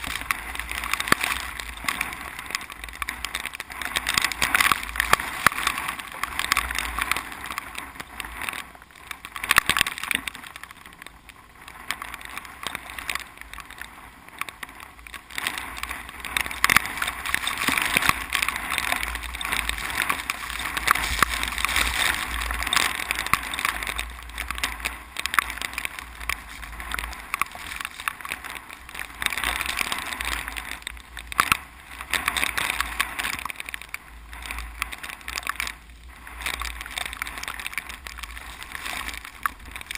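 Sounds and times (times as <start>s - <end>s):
rice plants rustling: 0.0s - 7.5s, 15.3s - 33.6s, 34.3s - 39.9s
wind rumble on microphone: 0.0s - 39.9s.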